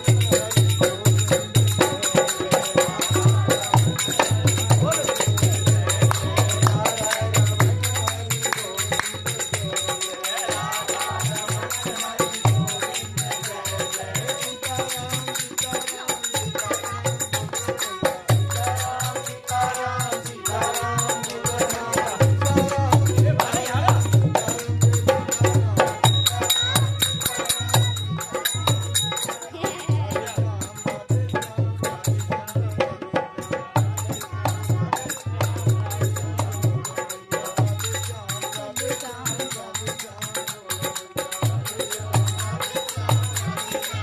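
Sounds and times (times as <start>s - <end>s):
hand drum beat: 0.0s - 9.8s, 20.6s - 30.7s
jingling tambourine-like percussion: 0.0s - 44.0s.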